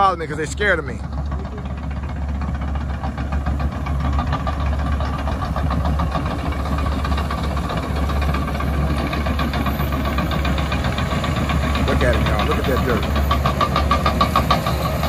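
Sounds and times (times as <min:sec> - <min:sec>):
bulldozer diesel engine running: 0:00.0 - 0:15.0.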